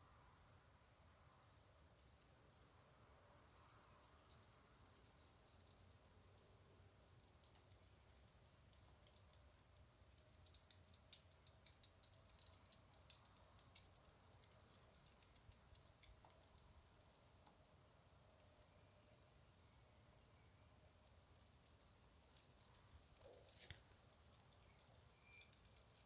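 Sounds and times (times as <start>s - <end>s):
rapid irregular clicking: 3.6s - 19.0s, 21.0s - 26.0s
faint high hiss: 14.0s - 26.0s.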